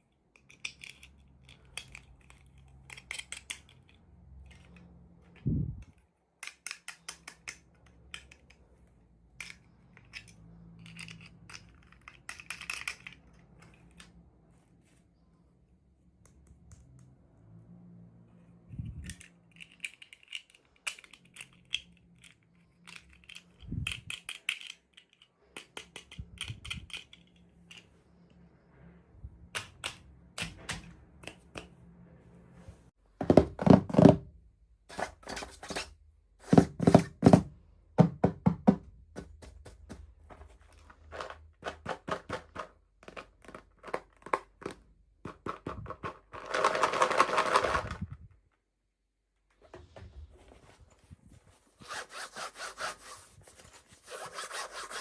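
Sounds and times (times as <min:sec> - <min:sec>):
plastic toy pieces clicking: 0:00.3 - 0:04.8, 0:05.8 - 0:08.6, 0:09.3 - 0:14.1, 0:19.0 - 0:27.9, 0:41.2 - 0:48.0.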